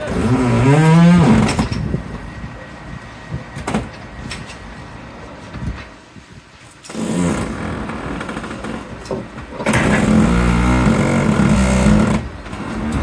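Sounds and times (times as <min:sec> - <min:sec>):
truck door hinges creaking: 0:00.1 - 0:02.0, 0:06.9 - 0:13.0.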